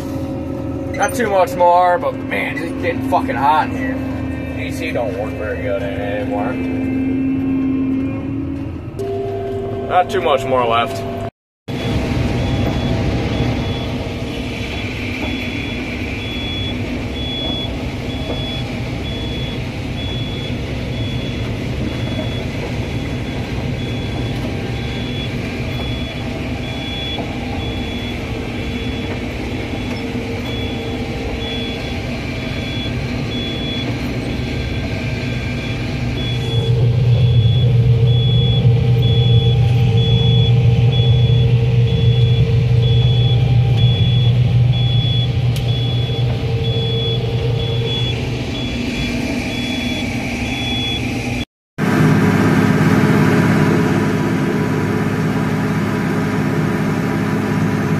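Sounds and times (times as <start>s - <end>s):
combine harvester drone: 0.0s - 57.9s
high electronic beep: 0.9s - 1.5s, 14.6s - 51.4s.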